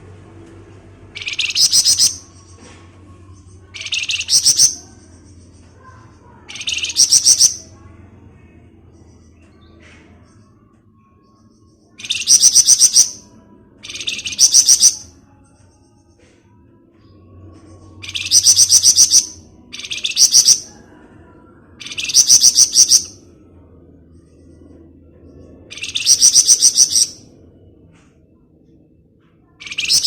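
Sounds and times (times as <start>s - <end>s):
songbird rattling trill: 1.2s - 2.2s, 3.8s - 4.8s, 18.0s - 20.7s, 25.7s - 27.2s.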